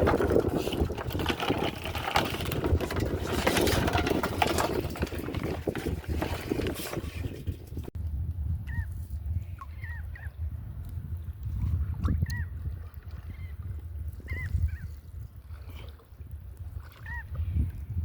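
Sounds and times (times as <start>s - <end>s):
water sloshing and splashing: 0.0s - 8.0s
wind on microphone: 0.0s - 18.0s.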